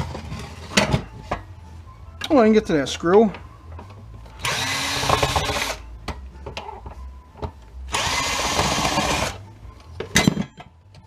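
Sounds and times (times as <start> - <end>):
power drill running: 4.4 - 5.8, 7.9 - 9.4.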